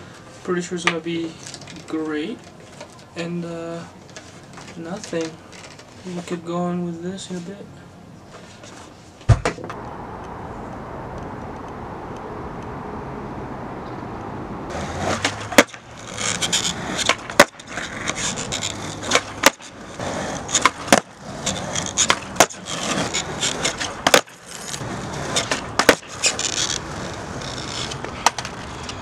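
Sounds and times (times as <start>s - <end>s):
skateboard wheels rolling: 0.0s - 29.0s
skateboard clacking on ground: 0.6s - 6.7s, 14.7s - 29.0s.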